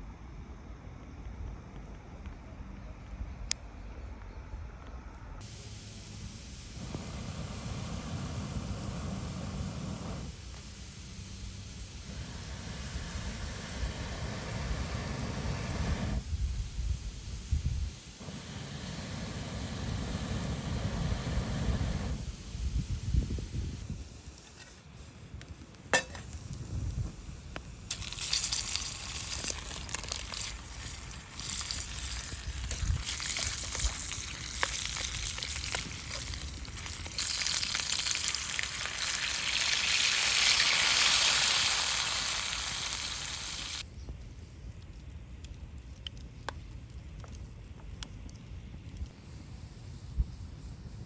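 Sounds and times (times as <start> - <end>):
food sizzling in a hot pan: 27.9 - 43.8.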